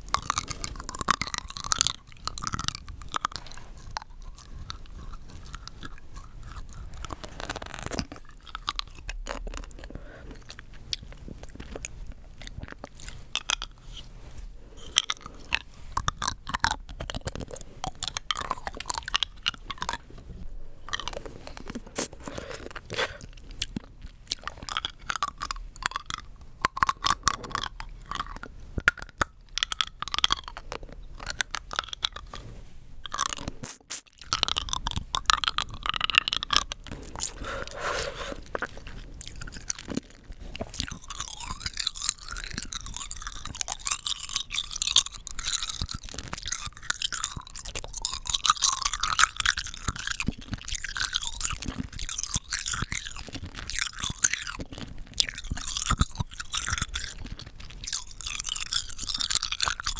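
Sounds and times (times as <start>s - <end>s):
hard candy crunching: 0.0s - 20.2s, 20.8s - 32.4s, 33.0s - 59.9s.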